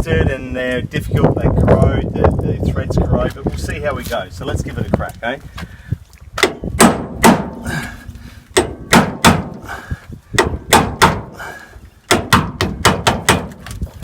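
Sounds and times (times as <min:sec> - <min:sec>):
hammer striking impact driver: 0:08.6 - 0:09.6.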